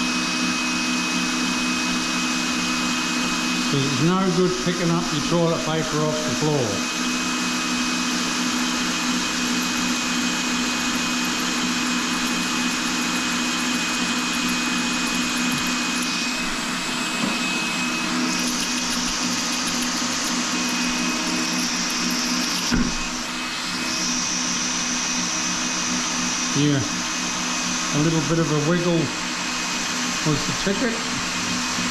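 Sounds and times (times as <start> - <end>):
power drill drilling into tile: 6.4 - 26.1.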